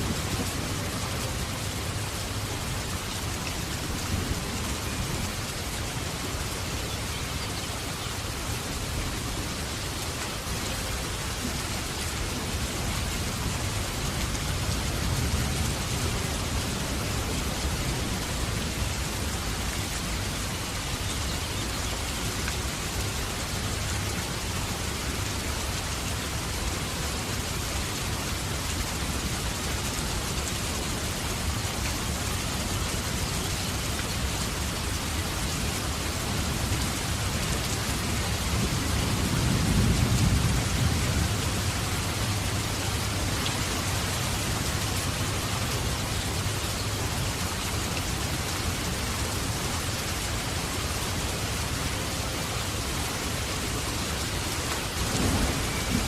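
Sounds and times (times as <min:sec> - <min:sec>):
heavy rain falling: 0:00.0 - 0:56.0
low rumble of thunder: 0:37.8 - 0:42.6, 0:54.9 - 0:56.0.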